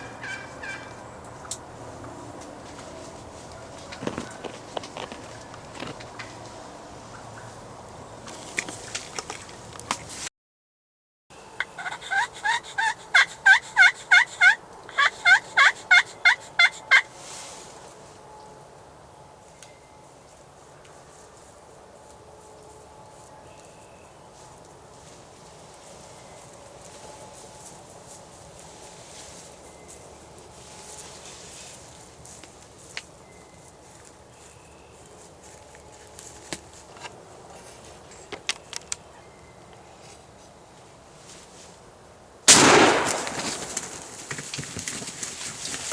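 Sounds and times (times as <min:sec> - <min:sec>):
turkey yelping: 0:00.0 - 0:00.9, 0:11.6 - 0:17.1.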